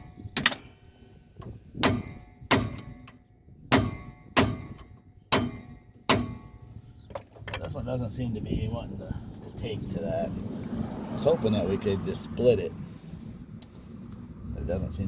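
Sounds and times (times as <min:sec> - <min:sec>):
hammer striking chisel on metal: 0:01.8 - 0:06.6.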